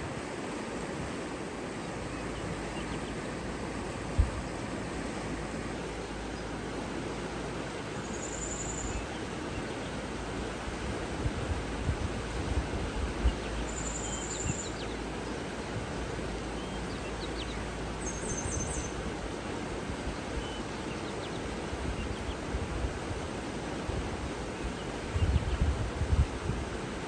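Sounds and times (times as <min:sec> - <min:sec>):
rushing water: 0:00.0 - 0:27.0
bird chirps and trills: 0:08.0 - 0:10.0, 0:13.2 - 0:15.8, 0:16.4 - 0:19.0.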